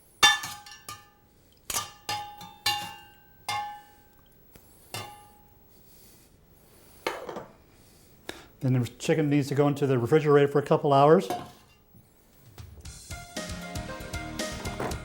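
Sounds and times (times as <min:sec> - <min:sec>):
dishware clinking: 0:00.2 - 0:04.2, 0:04.9 - 0:05.5, 0:11.2 - 0:11.8, 0:14.5 - 0:15.0.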